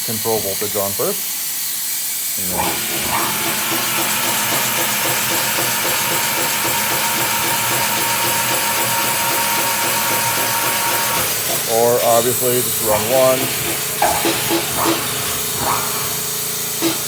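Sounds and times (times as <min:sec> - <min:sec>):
compressed air hissing: 0:00.0 - 0:05.0, 0:10.2 - 0:17.0
gear motors running: 0:00.0 - 0:17.0.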